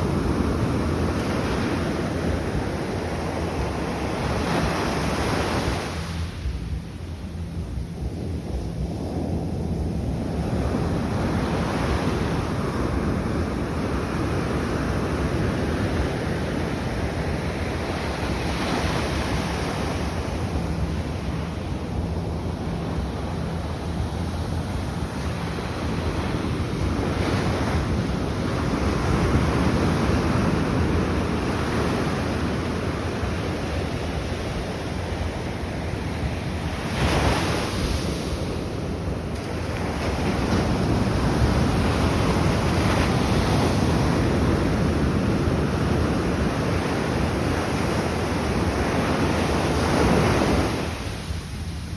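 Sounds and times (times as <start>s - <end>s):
wind buffeting microphone: 0.0s - 51.9s
waves breaking: 10.8s - 51.8s.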